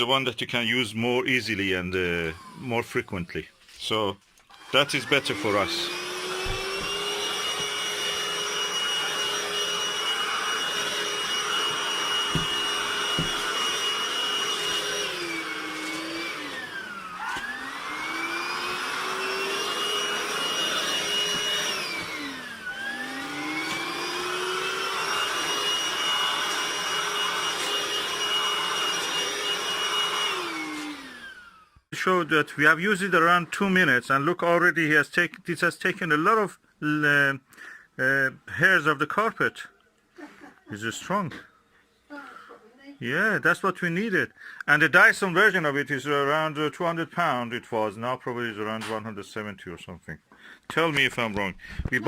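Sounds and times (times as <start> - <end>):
stick vacuum motor whine: 1.9 - 3.4, 4.4 - 34.0.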